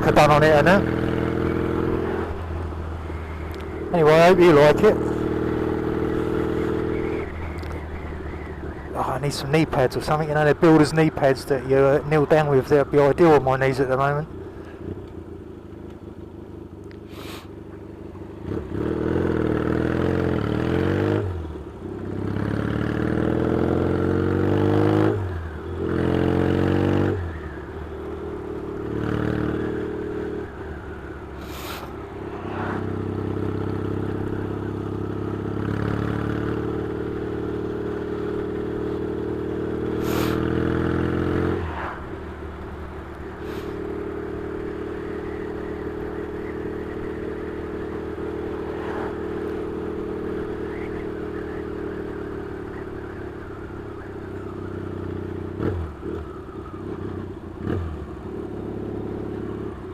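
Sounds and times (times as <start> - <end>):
motorcycle engine revving: 0.0 - 59.9.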